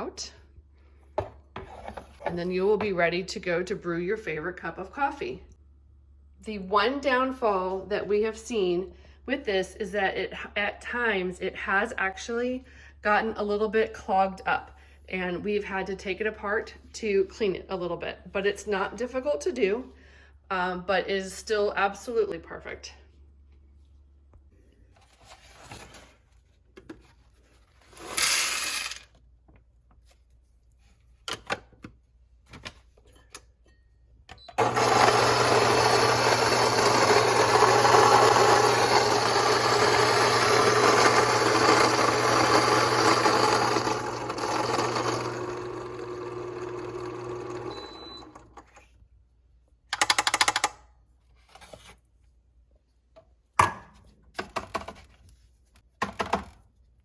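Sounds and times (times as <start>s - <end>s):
grinder grinding coffee beans: 27.9s - 29.1s, 34.6s - 48.8s.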